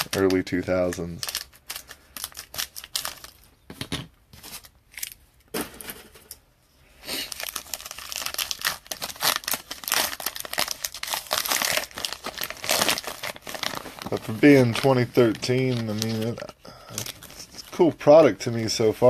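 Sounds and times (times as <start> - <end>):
wrapper being torn open: 0.0 - 3.5, 7.2 - 17.8
wrapper crinkling: 0.0 - 3.6, 7.2 - 17.9.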